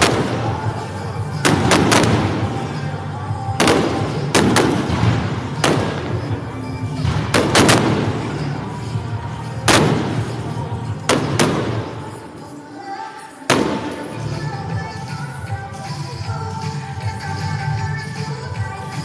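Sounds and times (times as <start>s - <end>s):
fireworks bangs: 0.0s - 2.8s, 3.5s - 8.7s, 9.6s - 12.2s
music playing: 0.0s - 19.0s.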